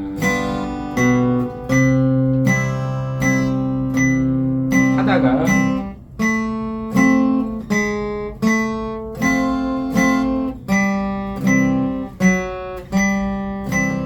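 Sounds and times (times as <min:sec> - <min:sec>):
guitar playing slow waltz: 0:00.0 - 0:14.0.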